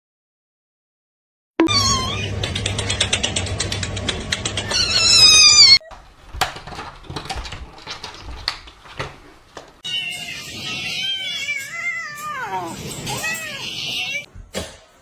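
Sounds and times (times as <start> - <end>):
cat meowing: 1.6 - 2.4, 4.7 - 5.9, 9.8 - 14.3
rapid clicks: 2.4 - 4.8.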